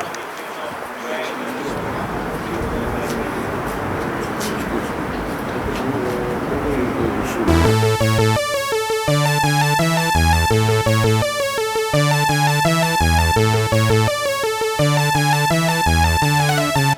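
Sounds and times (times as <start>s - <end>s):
electronic music with steady beat: 7.5s - 16.9s.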